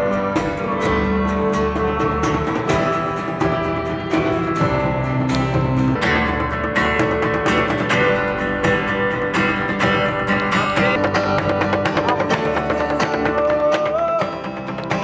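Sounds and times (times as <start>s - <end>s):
bass: 0.0s - 15.0s
steady drumbeat: 0.0s - 15.0s
strummed guitar: 0.0s - 15.0s.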